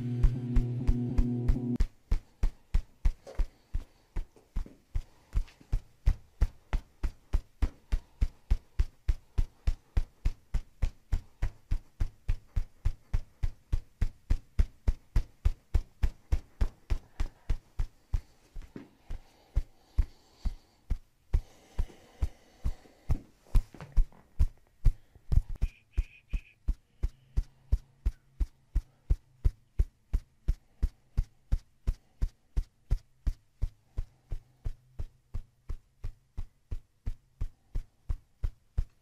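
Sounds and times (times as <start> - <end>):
massage gun thumping: 0.0 - 3.5.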